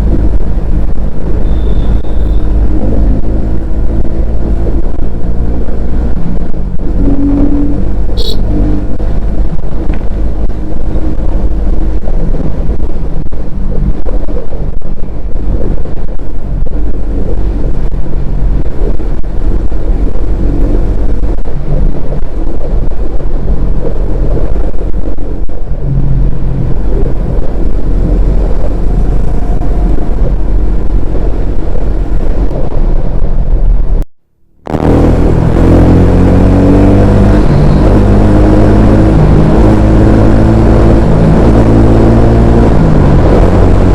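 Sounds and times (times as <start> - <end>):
motorcycle engine revving: 0.0 - 11.2, 34.6 - 43.9.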